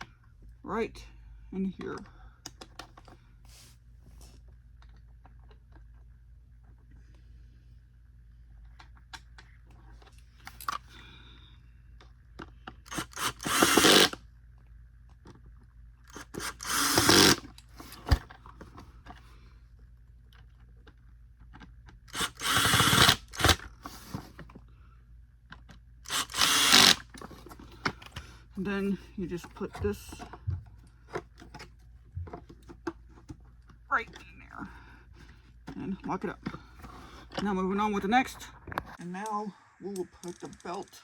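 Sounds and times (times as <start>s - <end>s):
power screwdriver whirring: 12.9s - 14.2s, 16.1s - 18.3s, 22.1s - 24.3s, 26.0s - 28.4s.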